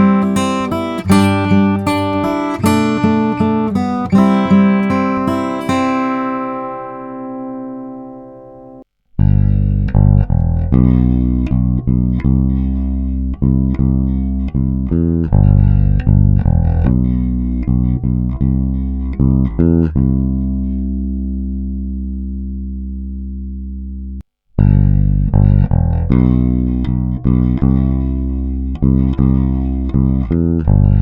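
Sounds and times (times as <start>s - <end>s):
strummed guitar chord: 0.0s - 8.8s
bass guitar plucked notes: 0.0s - 31.0s.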